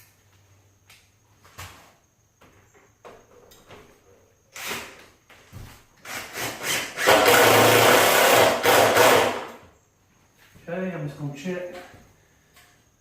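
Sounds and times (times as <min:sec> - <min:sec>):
power drill driving screws: 0:06.0 - 0:09.6.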